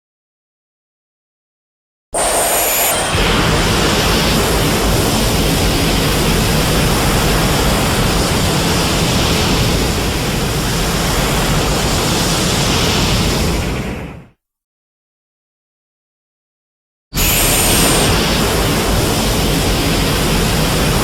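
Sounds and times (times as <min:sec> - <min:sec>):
sci-fi ray rushing noise: 0:02.2 - 0:07.9, 0:17.2 - 0:20.1.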